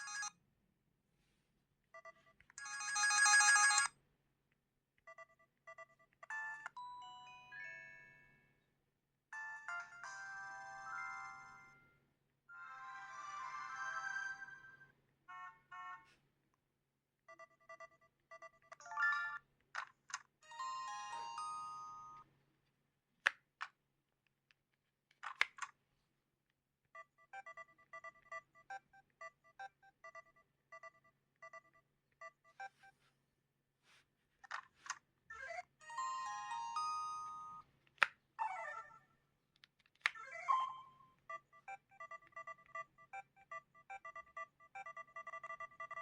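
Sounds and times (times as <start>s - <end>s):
evenly spaced beeps: 27.0s - 33.0s, 40.3s - 46.0s
phone electronic beeps: 40.5s - 46.0s.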